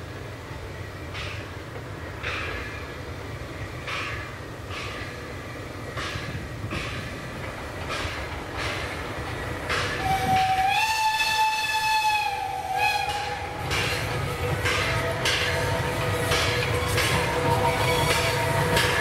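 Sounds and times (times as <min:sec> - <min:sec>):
steam locomotive exhaust chuffing: 0:01.0 - 0:19.0
steam whistle blast: 0:09.9 - 0:19.0.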